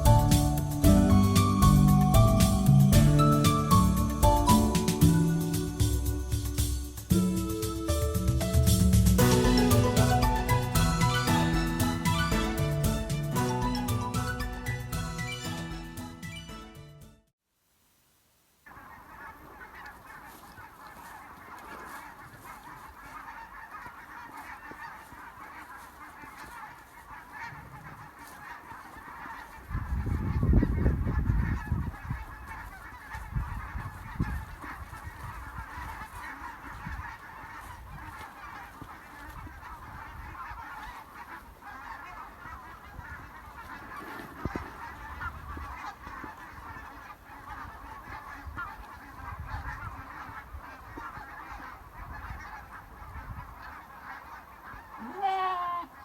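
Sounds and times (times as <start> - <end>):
geese honking: 0.0 - 16.5, 18.6 - 56.0.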